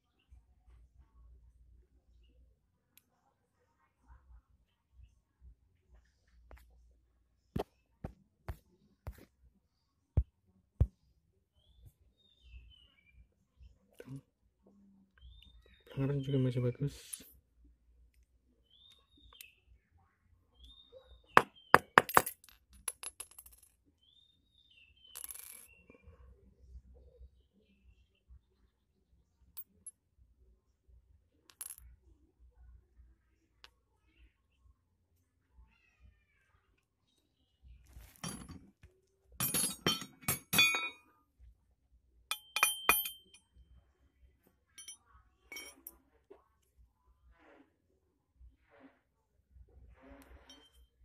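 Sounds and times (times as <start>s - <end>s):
small metal parts clinking: 38.1s - 38.6s, 39.4s - 41.0s, 42.3s - 43.4s, 44.8s - 46.0s.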